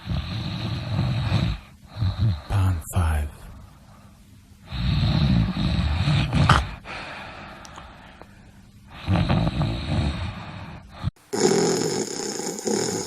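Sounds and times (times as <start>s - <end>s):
person snoring: 0.0s - 2.8s, 4.7s - 7.1s, 8.9s - 13.0s
breathing: 3.6s - 4.2s, 6.8s - 9.1s, 10.1s - 11.2s
sharp snort: 4.7s - 6.8s, 11.0s - 13.0s.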